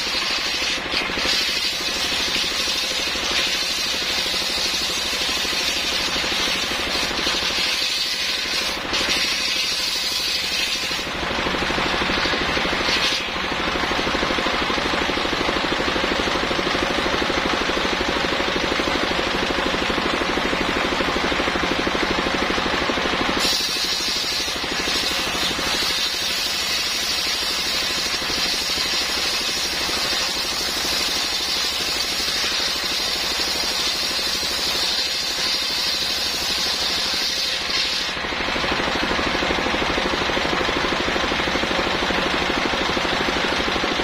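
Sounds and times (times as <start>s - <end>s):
saw blade ripping log: 0.0s - 13.4s, 23.4s - 38.2s
engine running: 0.0s - 44.0s.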